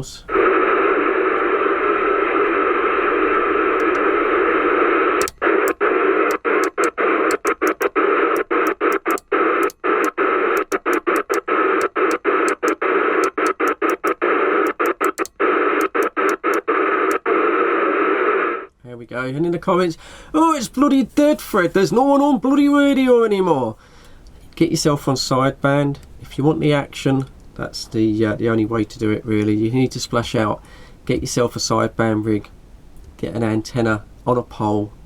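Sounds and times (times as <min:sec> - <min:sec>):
radio static hiss: 0:00.0 - 0:18.7.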